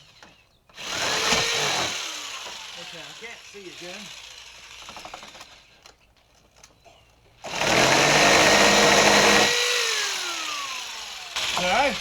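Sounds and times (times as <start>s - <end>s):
power tool running and winding down: 0.2s - 5.7s, 7.4s - 12.0s.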